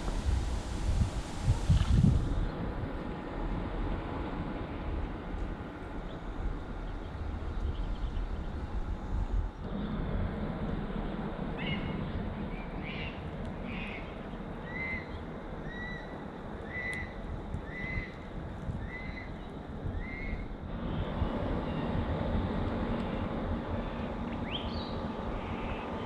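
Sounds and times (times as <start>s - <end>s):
wind rumble on microphone: 0.0s - 26.0s.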